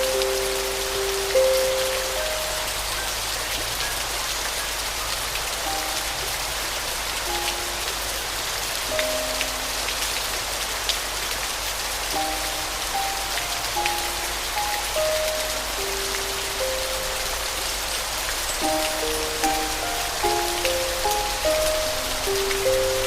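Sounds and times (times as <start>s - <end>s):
soft piano notes: 0.0s - 23.0s
steady rain falling: 0.0s - 23.0s
drops ticking: 18.4s - 23.0s.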